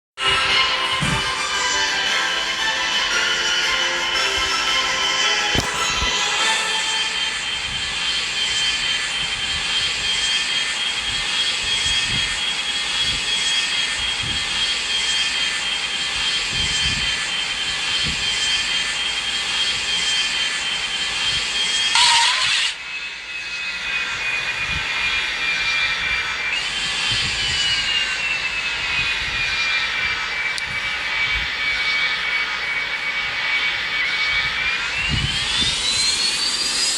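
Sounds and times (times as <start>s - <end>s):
jet engines whining: 0.2s - 36.9s
loud rush of noise: 0.3s - 3.2s, 5.5s - 13.3s.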